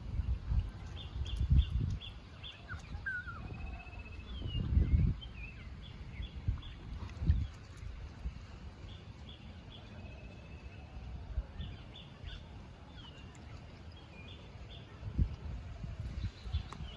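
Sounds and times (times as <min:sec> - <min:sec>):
small birds chirping: 0:11.6 - 0:16.9.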